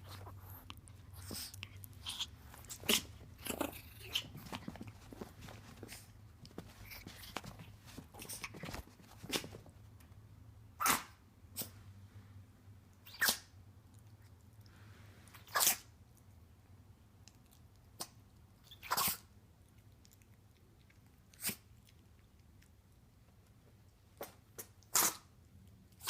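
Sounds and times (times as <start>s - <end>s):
small dog sneezing: 10.8s - 11.8s, 13.1s - 13.5s, 15.4s - 15.9s, 18.8s - 19.3s, 24.2s - 25.3s.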